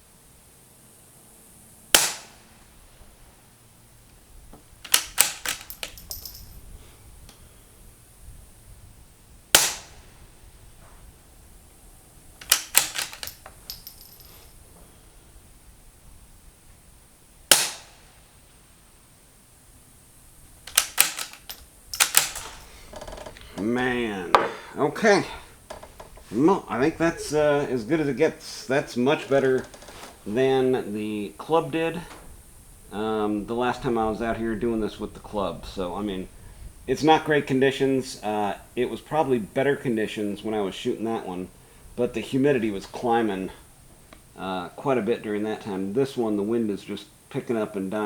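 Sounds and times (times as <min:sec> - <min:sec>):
suppressed rifle shot: 0:01.9 - 0:02.6, 0:04.9 - 0:06.4, 0:09.5 - 0:10.2, 0:12.4 - 0:14.0, 0:17.5 - 0:18.2, 0:20.7 - 0:21.4, 0:22.0 - 0:22.9
rifle bolt metallic clicks: 0:04.8 - 0:06.5, 0:12.4 - 0:14.3, 0:17.5 - 0:18.0, 0:20.7 - 0:23.4.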